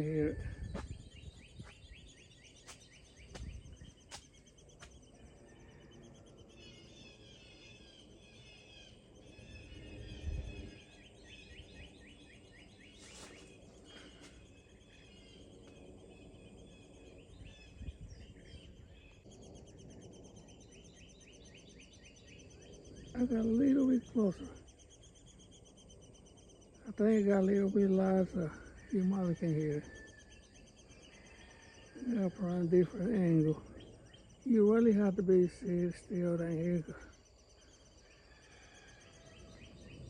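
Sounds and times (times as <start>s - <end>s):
nestlings chirping: 0.0s - 31.4s.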